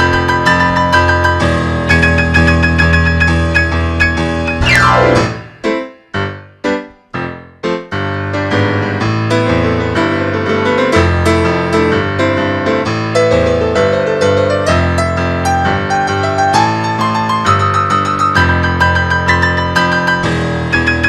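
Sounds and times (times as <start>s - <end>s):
piano music: 0.0s - 6.3s.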